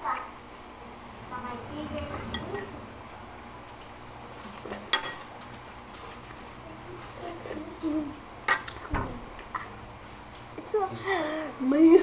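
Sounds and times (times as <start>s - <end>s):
utensils clinking against dishes: 4.4s - 7.7s, 8.5s - 9.6s.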